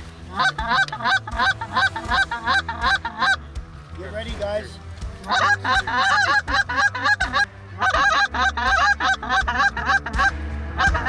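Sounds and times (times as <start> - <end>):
goose honking: 0.0 - 3.5, 5.0 - 11.0.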